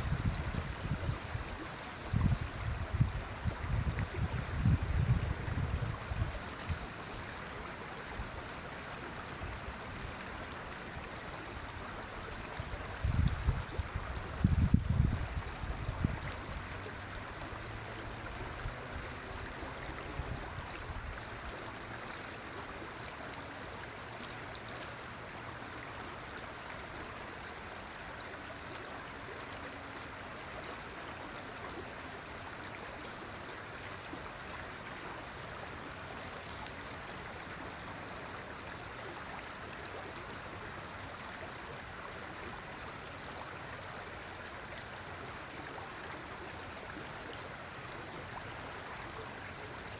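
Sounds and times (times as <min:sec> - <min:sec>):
river water rushing: 0:15.2 - 0:49.9.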